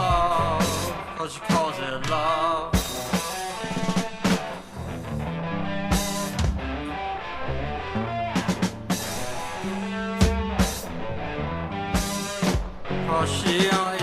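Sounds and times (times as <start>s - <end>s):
instrumental rock music: 0.0s - 14.0s
drum hits: 2.8s - 5.2s, 5.9s - 6.9s, 8.4s - 11.1s, 12.0s - 14.0s.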